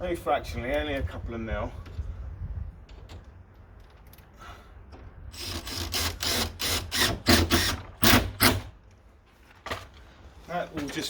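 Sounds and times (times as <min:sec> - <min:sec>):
cordless drill short bursts: 0:05.4 - 0:08.7.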